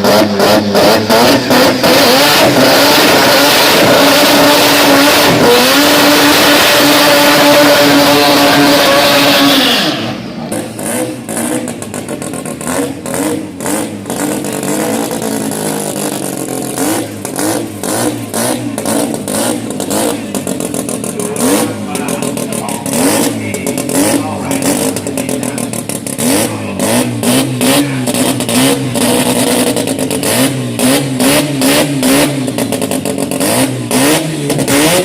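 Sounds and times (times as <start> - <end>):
rotary engine at full throttle: 0.0 - 35.0.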